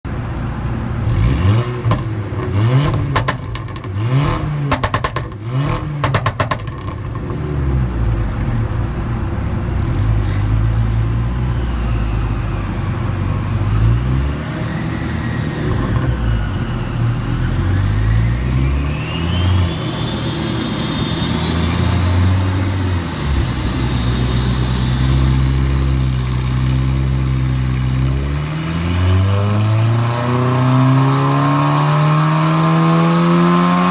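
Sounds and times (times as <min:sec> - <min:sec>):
high engine whine: 0:00.1 - 0:33.4
car engine revving: 0:00.8 - 0:33.9
exhaust crackling and popping: 0:01.1 - 0:08.6.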